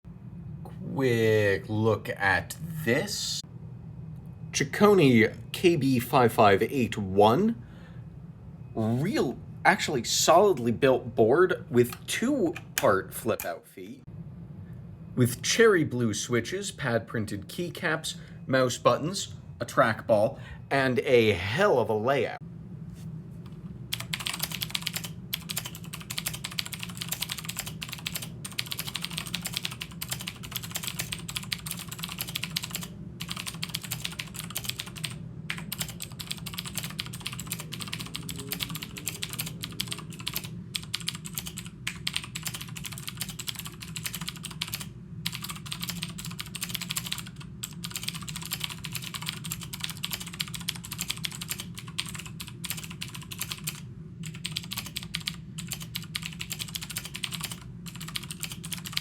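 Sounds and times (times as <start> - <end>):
clicky keyboard typing: 23.9 - 59.0.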